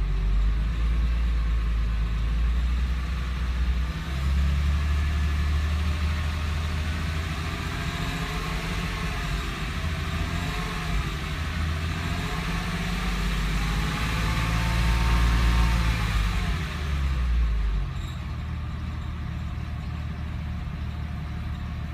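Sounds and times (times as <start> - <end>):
car engine running: 0.0 - 21.9
whining squeaky noise: 17.8 - 21.9.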